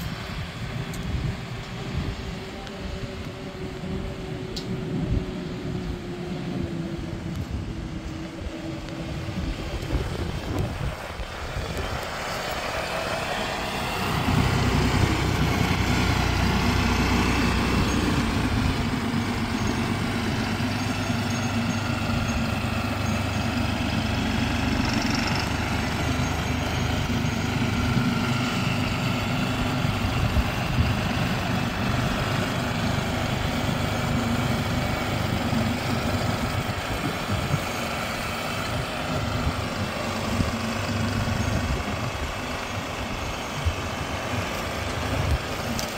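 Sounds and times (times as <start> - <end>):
tractor engine running: 0.0 - 45.9.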